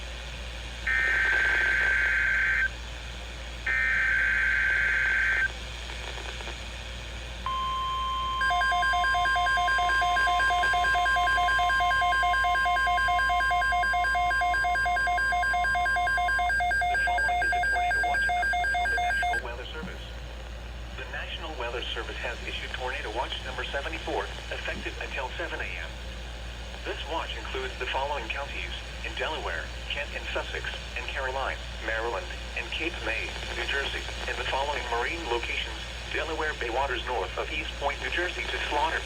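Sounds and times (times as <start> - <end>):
buzzing digital data tones: 7.5 - 19.4
rapidly pulsing two-pitch beep: 7.5 - 19.4
steady warning alarm tone: 7.5 - 19.5.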